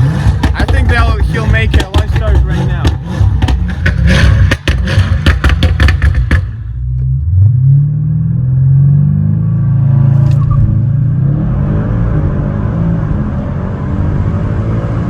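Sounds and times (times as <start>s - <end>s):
engine crackles: 0.0s - 8.6s
car engine accelerating: 0.0s - 15.0s.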